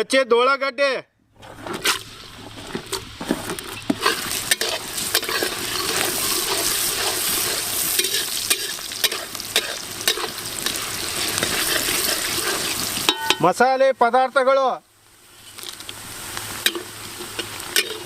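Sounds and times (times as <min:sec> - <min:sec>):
utensil scraping pan: 0:01.4 - 0:13.3, 0:16.6 - 0:18.0
onions sizzling in oil: 0:01.8 - 0:13.6, 0:14.8 - 0:18.0.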